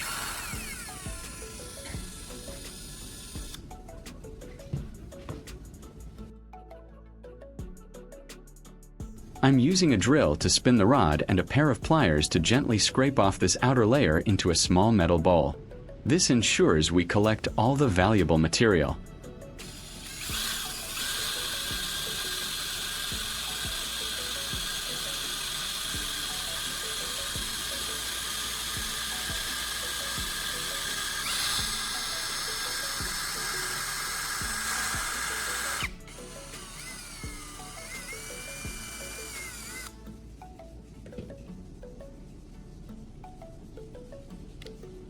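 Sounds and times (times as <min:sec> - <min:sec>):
electric drill whine: 0:00.0 - 0:05.4, 0:18.9 - 0:40.0
faint background music with beat: 0:00.0 - 0:45.0.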